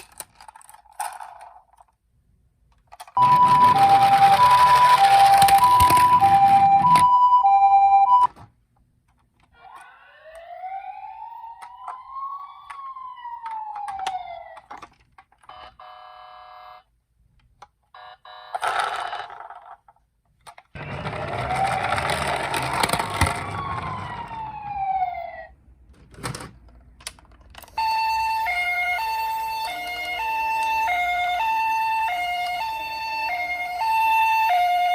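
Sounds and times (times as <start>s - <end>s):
hi-lo two-tone siren: 3.2s - 8.3s
noise under siren: 3.2s - 8.3s, 9.6s - 14.7s, 20.8s - 25.6s, 27.7s - 34.9s
siren alternating between notes: 3.2s - 8.3s, 9.6s - 14.6s, 20.8s - 25.5s, 27.8s - 34.9s
toy wailing sirens: 3.2s - 8.3s, 9.6s - 14.7s, 20.8s - 25.5s, 27.7s - 34.9s.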